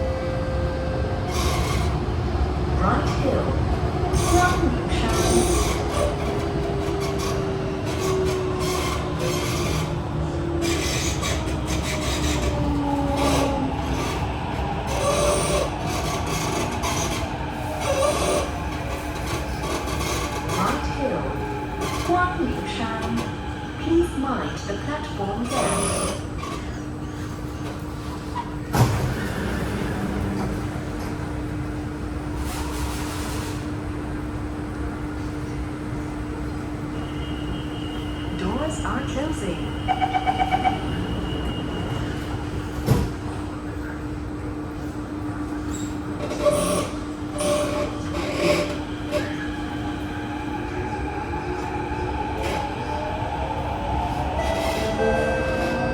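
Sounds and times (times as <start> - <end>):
steady train hum: 0.0 - 55.9
wheels rasping on rails: 4.2 - 26.8.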